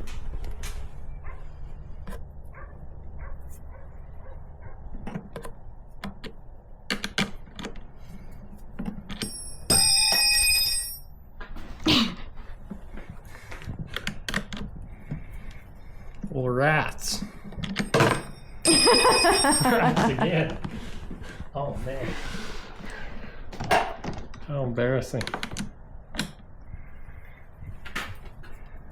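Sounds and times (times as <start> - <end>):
loud bright ringing tone: 9.2 - 11.2, 17.8 - 20.2.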